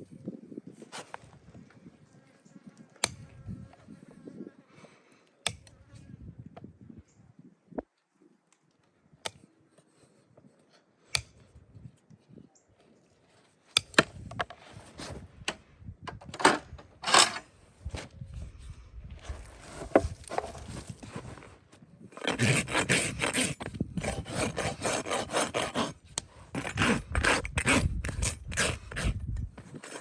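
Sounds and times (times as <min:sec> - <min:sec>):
hoof trimming tool snapping: 0:03.0 - 0:03.3, 0:05.5 - 0:06.0, 0:11.1 - 0:11.4, 0:13.7 - 0:14.4, 0:22.2 - 0:30.0
tool scraping a hoof: 0:16.4 - 0:18.1, 0:19.2 - 0:30.0.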